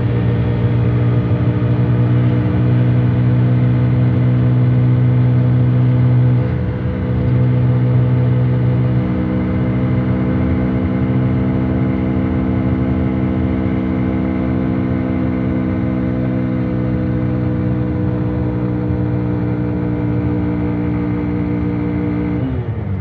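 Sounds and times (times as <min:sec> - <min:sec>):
motorcycle engine running steadily: 0:00.0 - 0:23.0.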